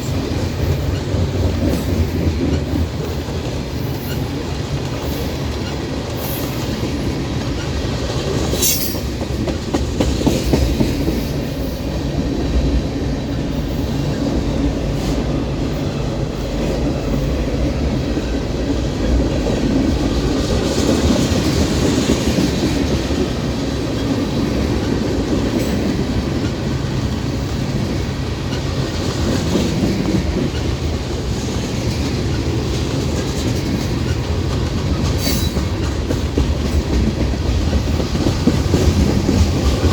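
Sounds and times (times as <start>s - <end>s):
train cars rolling on rails: 0.0s - 39.9s.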